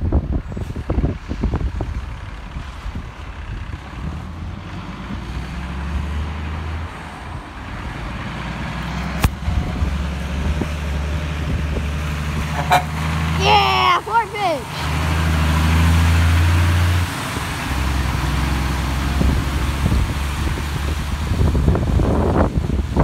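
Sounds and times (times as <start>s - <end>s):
heavy truck engine drone: 0.0s - 23.0s
wind buffeting microphone: 0.0s - 23.0s
traffic hiss in rain: 11.8s - 23.0s.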